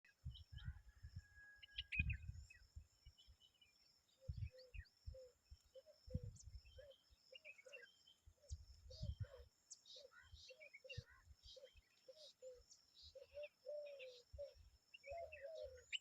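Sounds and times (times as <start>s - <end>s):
low repeated bird notes: 1.8s - 16.0s.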